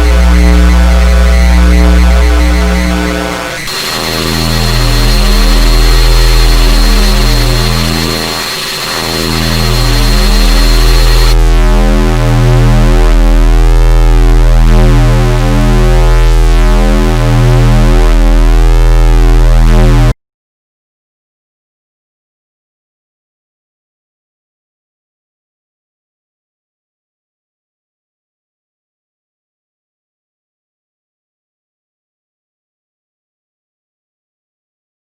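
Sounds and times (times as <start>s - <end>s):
distorted synthesized drone: 0.0s - 20.1s.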